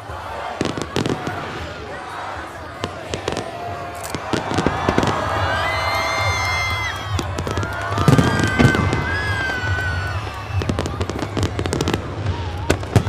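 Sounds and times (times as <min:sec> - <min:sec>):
fireworks bangs and crackles: 0:00.0 - 0:13.0
music playing: 0:00.0 - 0:13.0.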